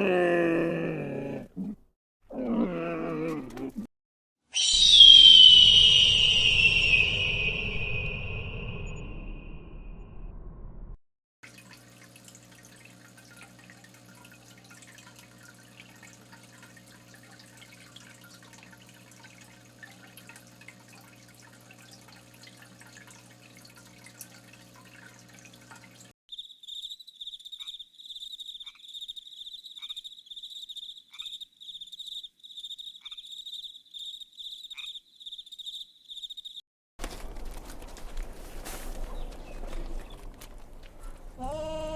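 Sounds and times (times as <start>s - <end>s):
short falling calls: 4.5s - 8.4s, 41.0s - 41.9s
high-pitched insect chirring: 4.6s - 8.5s, 26.3s - 36.6s.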